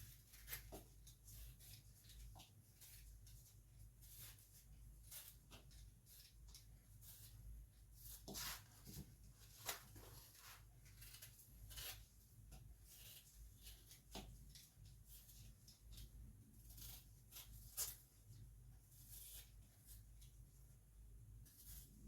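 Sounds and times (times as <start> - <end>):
blade scraping through pears: 0.1 - 8.7, 10.8 - 18.1.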